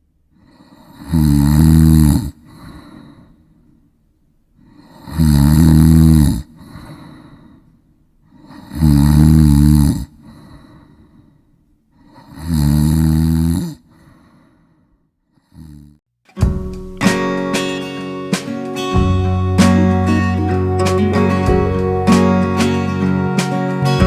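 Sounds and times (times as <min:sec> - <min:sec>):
faint breath: 0:00.3 - 0:01.1, 0:02.4 - 0:03.9, 0:06.5 - 0:08.8, 0:10.1 - 0:12.4, 0:13.8 - 0:15.7
person snoring: 0:00.4 - 0:03.1, 0:04.7 - 0:07.2, 0:08.4 - 0:10.7, 0:12.0 - 0:14.1, 0:15.5 - 0:16.0.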